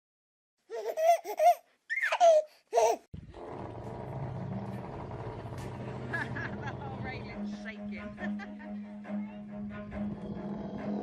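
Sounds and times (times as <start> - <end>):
baby laughing and squealing: 0.7 - 3.1.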